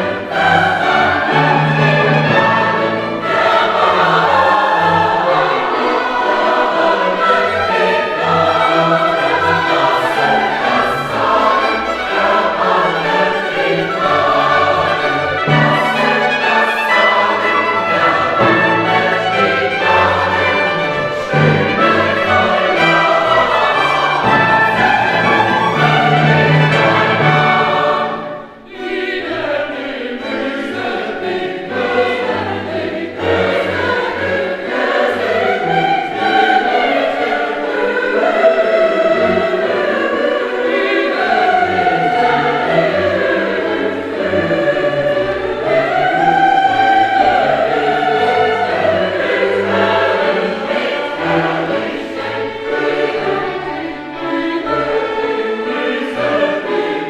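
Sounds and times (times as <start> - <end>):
choir singing: 0.0 - 57.0.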